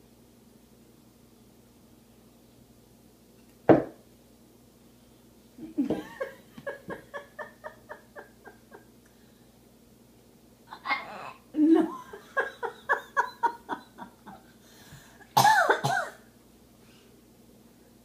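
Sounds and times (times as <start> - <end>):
person laughing: 5.6 - 8.9, 11.6 - 14.5.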